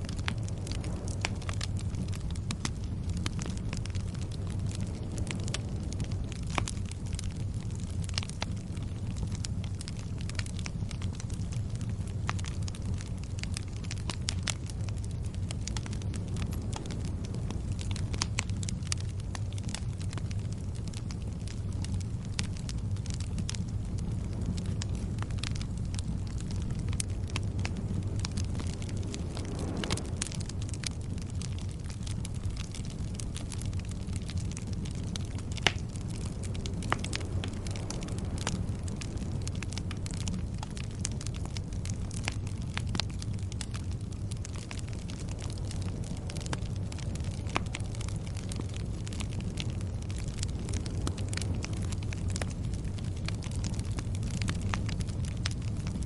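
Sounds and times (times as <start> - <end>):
fire popping and snapping: 0.0 - 56.0
low rumble: 0.0 - 56.0
wood fire crackling: 0.0 - 56.0.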